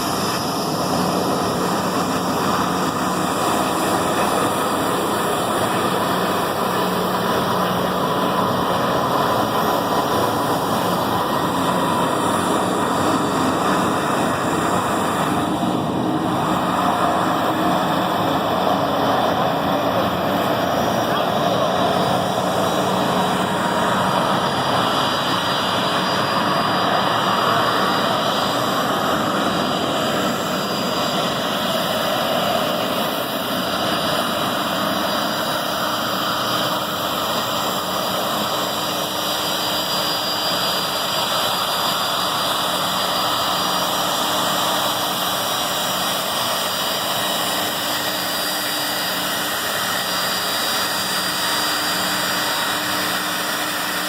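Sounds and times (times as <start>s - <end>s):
jet engines running: 0.0s - 54.0s.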